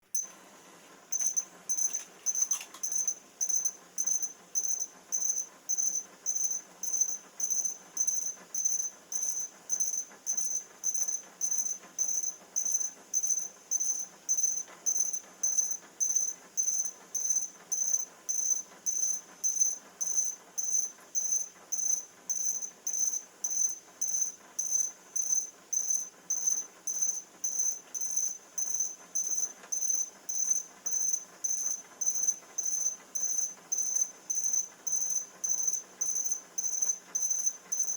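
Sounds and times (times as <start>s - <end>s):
high-pitched electronic beeps: 1.1s - 37.9s.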